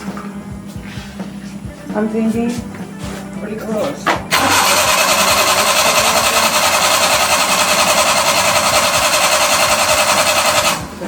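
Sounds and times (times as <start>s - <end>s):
power tool motor whirring: 4.3s - 11.0s.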